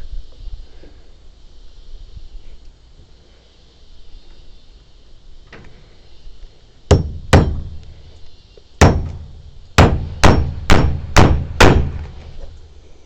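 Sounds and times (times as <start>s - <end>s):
hammer striking wooden frame: 6.9s - 7.8s, 8.8s - 12.2s.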